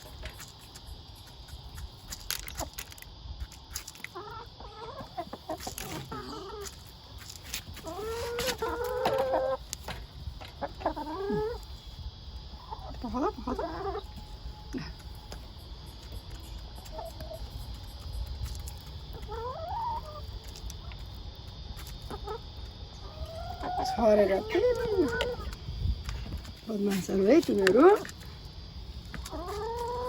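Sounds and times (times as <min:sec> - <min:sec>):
hens clucking: 0:04.1 - 0:07.1, 0:07.7 - 0:15.2, 0:16.0 - 0:25.6, 0:28.9 - 0:30.0.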